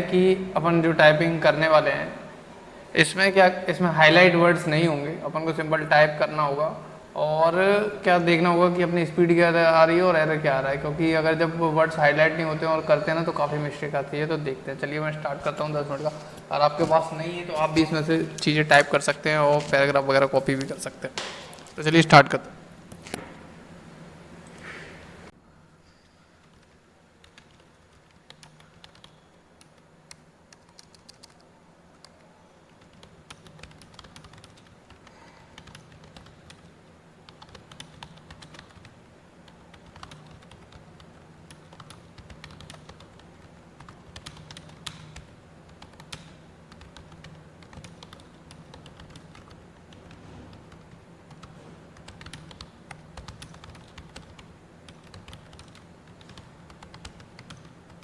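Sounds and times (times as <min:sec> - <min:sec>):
low steady hum: 0:00.0 - 0:58.0
keyboard typing: 0:09.9 - 0:21.9, 0:26.4 - 0:36.7, 0:37.3 - 0:58.0.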